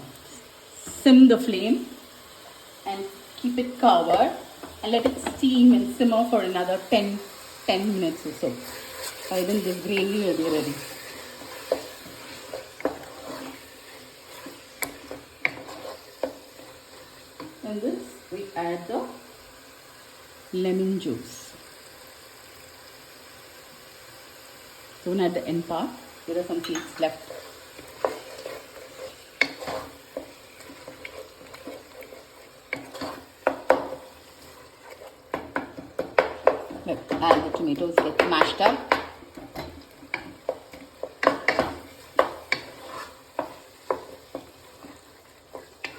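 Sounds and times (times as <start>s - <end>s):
gravy sizzling in a pot: 0.0s - 45.9s
spoon stirring and mashing: 8.2s - 17.6s, 26.5s - 45.9s
spoon knocking against pan: 32.7s - 34.0s, 35.3s - 42.7s.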